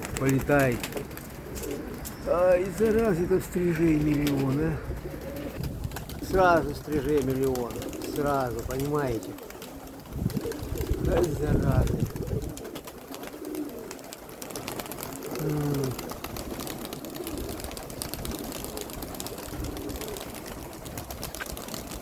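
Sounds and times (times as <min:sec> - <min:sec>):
pigeons cooing: 0:00.0 - 0:22.0
wind rumbling on microphone: 0:03.9 - 0:13.0, 0:15.1 - 0:22.0.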